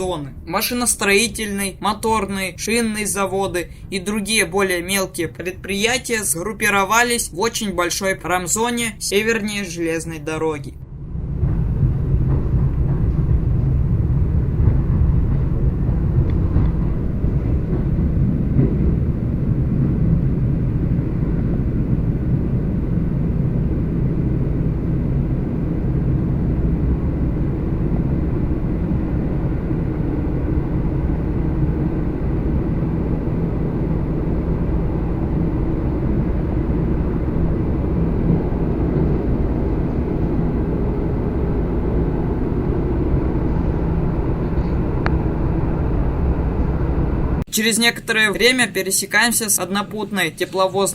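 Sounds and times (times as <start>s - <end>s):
train wheels rumbling on rail: 11.1s - 47.4s.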